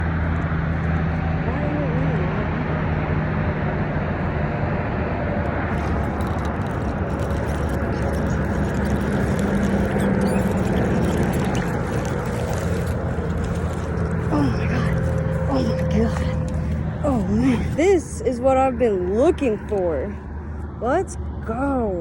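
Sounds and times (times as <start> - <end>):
engine humming: 0.0 - 22.0
fine crackle: 5.7 - 17.7.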